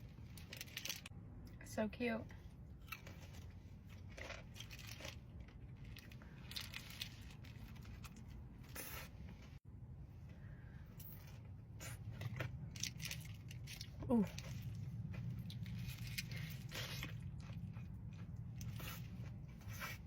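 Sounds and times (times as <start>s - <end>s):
low steady hum: 0.0s - 20.0s
wrapper crinkling and tearing: 0.2s - 1.1s.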